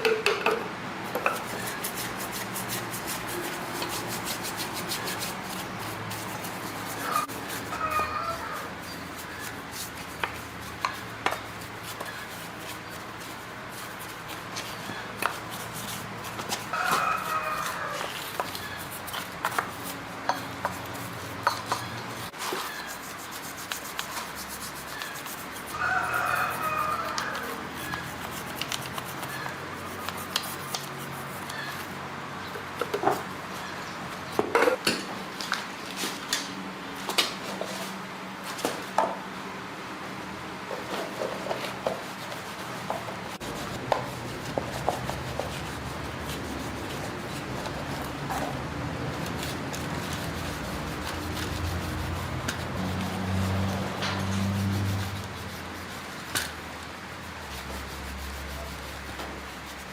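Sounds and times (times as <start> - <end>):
rooster crowing: 7.0 - 8.8, 16.7 - 18.3, 25.7 - 28.0.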